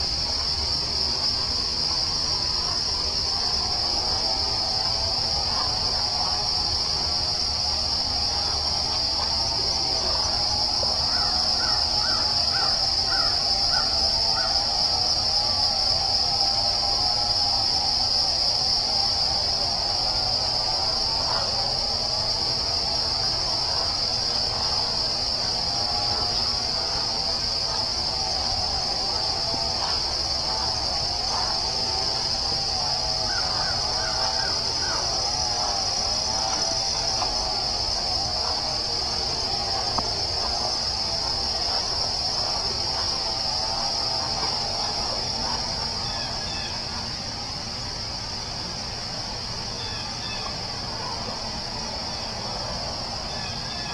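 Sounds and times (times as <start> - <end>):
crickets chirping: 0.0 - 53.9
birds calling: 1.3 - 14.8, 19.3 - 47.0.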